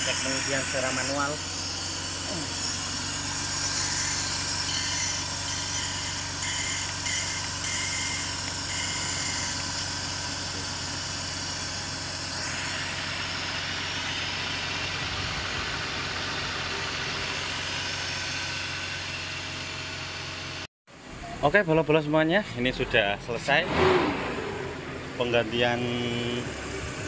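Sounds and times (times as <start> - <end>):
high-pitched whine: 0.0 - 20.0
car engine idling: 0.0 - 21.2, 24.4 - 27.0.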